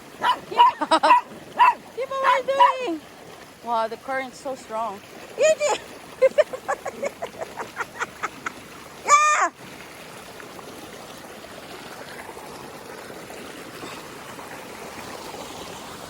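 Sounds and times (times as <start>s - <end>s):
stream rushing over waterfalls: 0.0s - 16.0s.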